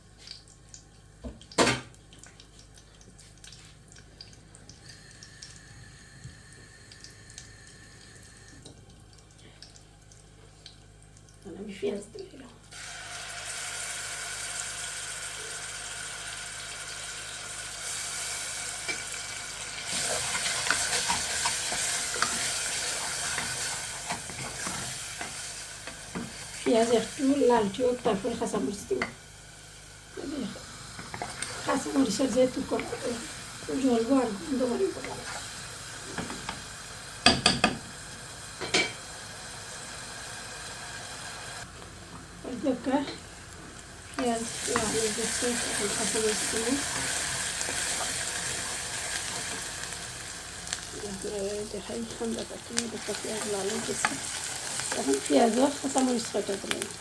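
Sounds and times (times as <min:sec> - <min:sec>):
onions sizzling in hot oil: 0:12.7 - 0:57.0.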